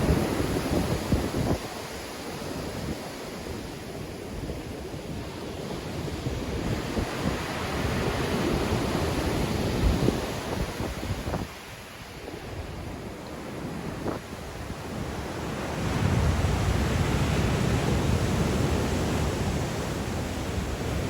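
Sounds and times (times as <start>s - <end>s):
wind buffeting microphone: 0.0s - 2.0s.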